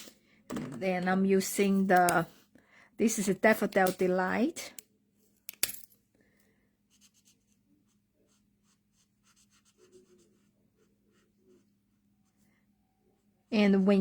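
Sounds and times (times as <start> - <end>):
marker scratching on card: 6.9 - 11.7.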